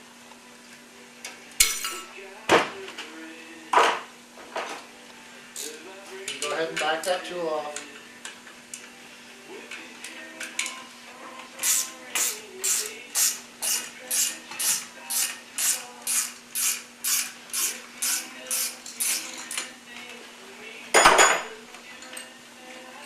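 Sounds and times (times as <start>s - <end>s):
ratchet wrench clicking: 11.6s - 19.6s.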